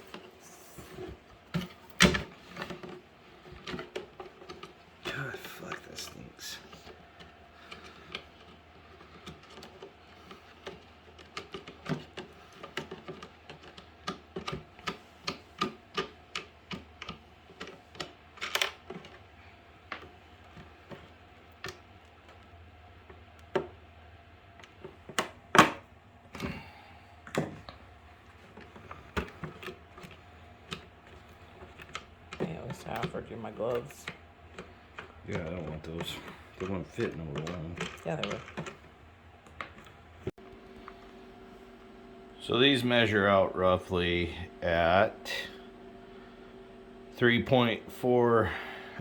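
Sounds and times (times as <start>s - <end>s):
plastic fittings clicking and knocking: 6.8s - 19.2s.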